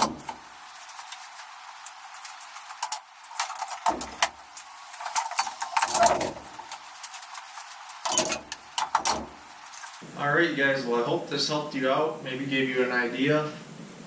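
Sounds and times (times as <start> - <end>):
objects being handled: 0.0 - 10.0.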